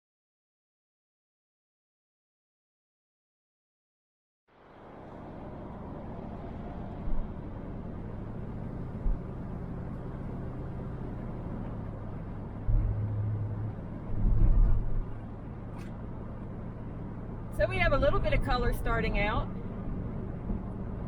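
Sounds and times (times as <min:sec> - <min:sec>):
van engine and road drone: 0:04.5 - 0:21.0
low rumbles: 0:04.8 - 0:21.0.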